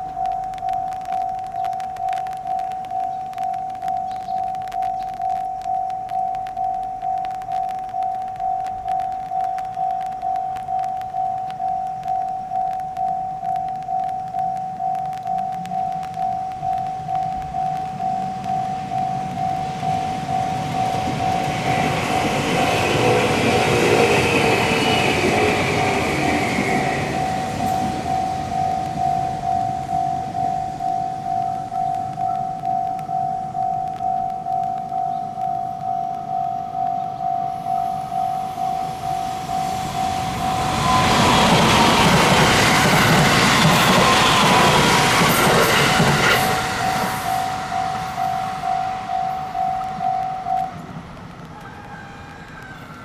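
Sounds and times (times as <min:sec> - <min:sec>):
level crossing bell tones: 0:00.0 - 0:42.5, 0:43.2 - 0:51.3
train rumble and wheel noise: 0:15.2 - 0:53.0.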